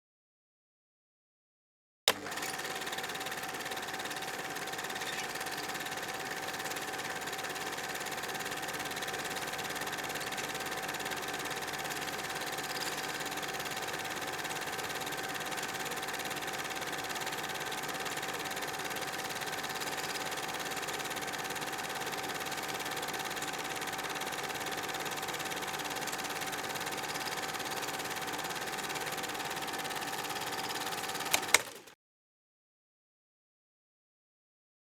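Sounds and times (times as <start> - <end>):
projector switch clicks: 2.1 - 2.4, 31.0 - 31.8
film projector whirring: 2.1 - 32.0.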